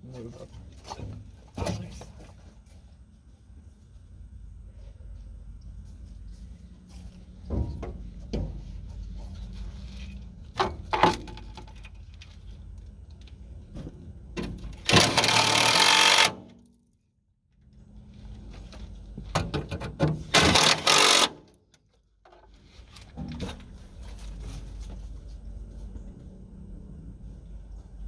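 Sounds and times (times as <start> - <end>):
power drill driving screws: 14.8 - 16.4, 20.3 - 21.4.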